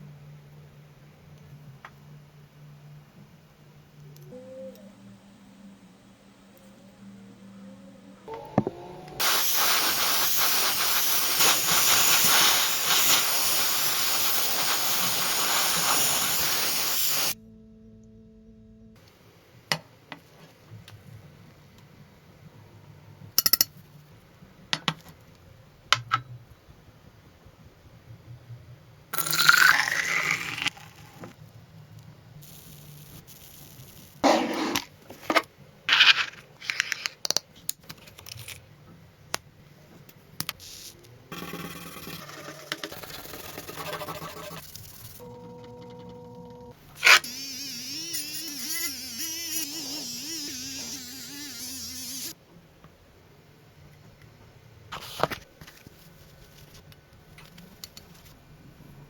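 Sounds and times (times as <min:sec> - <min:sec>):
paint spray gun hissing: 0:09.2 - 0:17.4.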